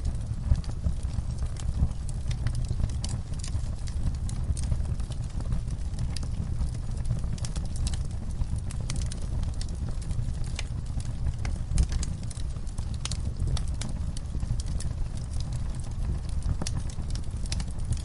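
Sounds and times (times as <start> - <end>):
fire crackling and popping: 0.0 - 18.0
low rumble of flames: 0.0 - 18.0.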